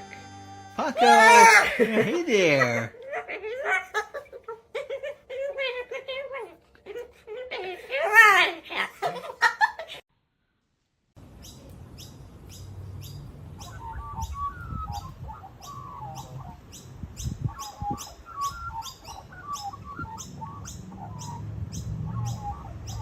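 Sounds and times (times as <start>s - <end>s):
birds chirping: 11.2s - 23.0s
lower warbling bird calls: 11.4s - 23.0s.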